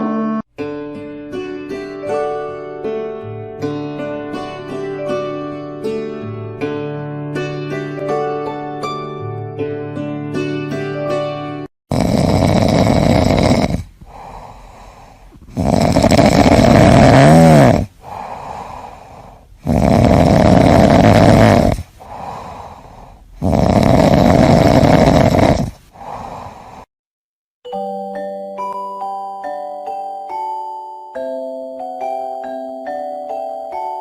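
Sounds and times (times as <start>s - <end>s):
cat snoring: 11.9s - 26.9s
cat breathing out: 14.0s - 15.6s, 17.8s - 19.6s, 21.8s - 23.4s, 25.7s - 26.9s.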